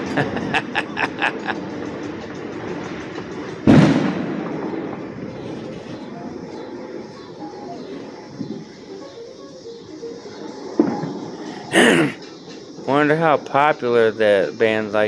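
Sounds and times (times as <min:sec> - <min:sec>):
firecracker pops: 0:03.7 - 0:04.5.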